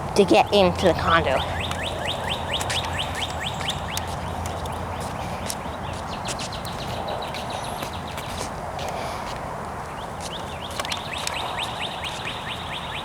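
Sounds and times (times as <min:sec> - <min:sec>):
birds chirping and clicking: 0:00.0 - 0:13.0.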